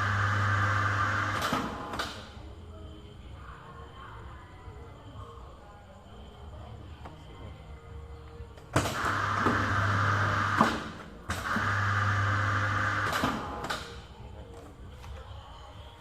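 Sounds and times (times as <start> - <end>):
paper guillotine motor hum: 0.0 - 2.0, 8.8 - 13.8.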